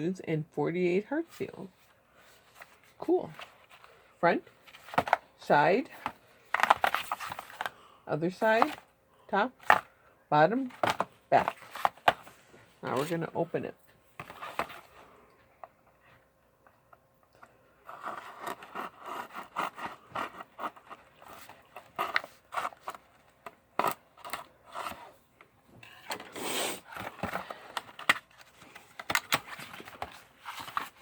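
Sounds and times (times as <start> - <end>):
cardboard and paper rustling: 2.1 - 5.3, 5.9 - 7.8, 8.4 - 8.9, 10.6 - 13.3, 14.2 - 15.1, 17.8 - 25.2, 25.8 - 31.0.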